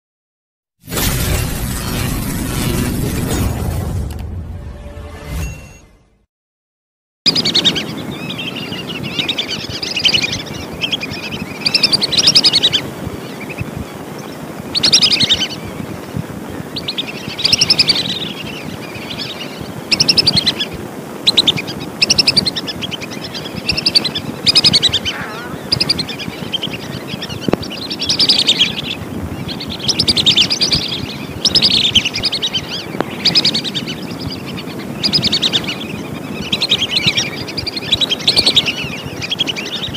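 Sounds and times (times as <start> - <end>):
whistling ducks calling: 19.1 - 29.0.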